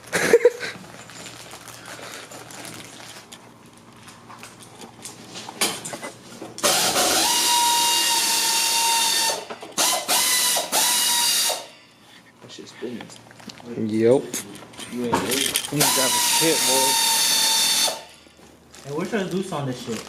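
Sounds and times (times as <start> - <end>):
cordless power tool whining: 6.6 - 11.7, 15.7 - 18.1.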